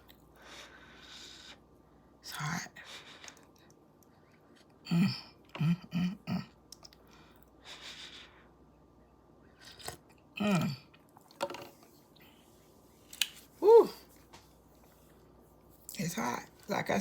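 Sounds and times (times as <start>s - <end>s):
woman vocal sound falling pitch: 13.6s - 14.0s
woman humming: 13.6s - 14.1s.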